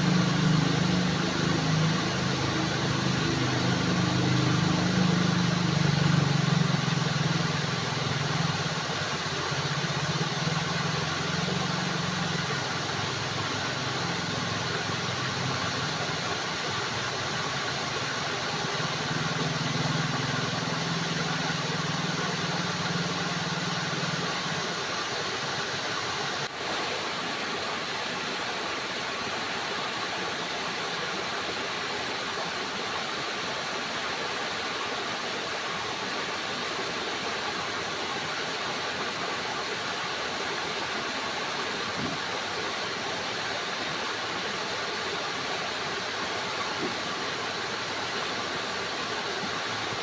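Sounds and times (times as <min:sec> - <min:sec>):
low hum: 0:00.0 - 0:24.7
water flowing and splashing: 0:00.0 - 0:50.0.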